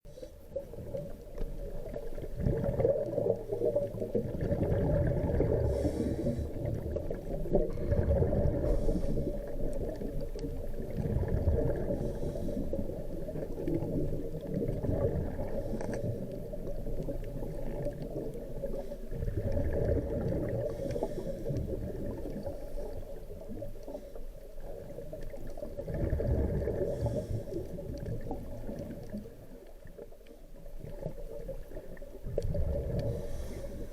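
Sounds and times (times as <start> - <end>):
underwater crackling and gurgling: 0.1 - 33.9
fish scraping on coral: 32.5 - 33.9.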